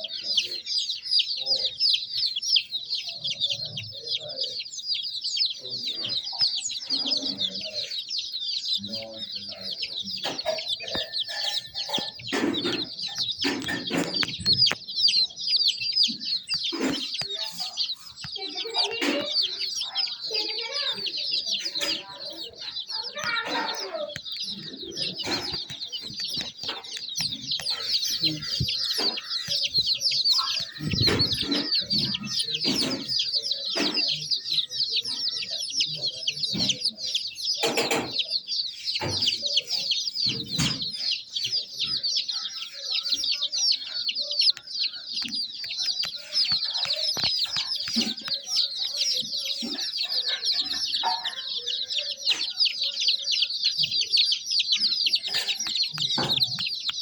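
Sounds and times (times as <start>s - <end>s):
chicks cheeping: 0.0s - 57.0s
knocks and thumps: 11.9s - 14.8s, 30.6s - 33.2s.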